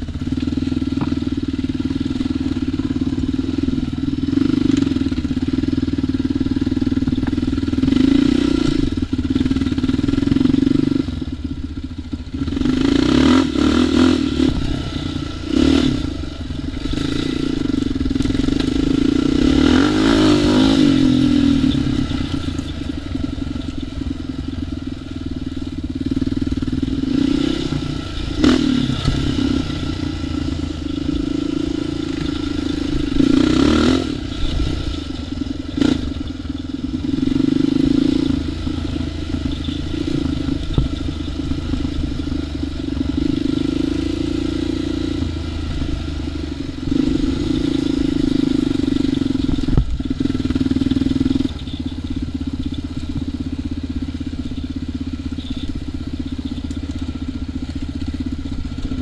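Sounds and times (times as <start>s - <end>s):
atv engine running: 0.0s - 59.0s.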